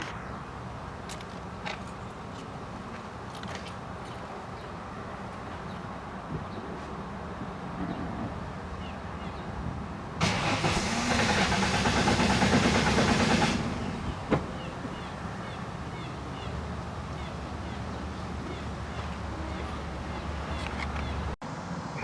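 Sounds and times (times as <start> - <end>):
car starter cranking engine: 10.2 - 14.3.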